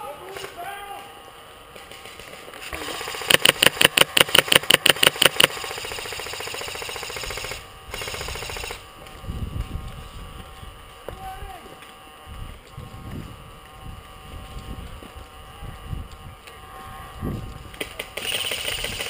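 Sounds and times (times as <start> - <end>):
steady mechanical noise: 0.0 - 19.0
airsoft rifle firing rapidly: 2.7 - 8.8, 18.0 - 19.0.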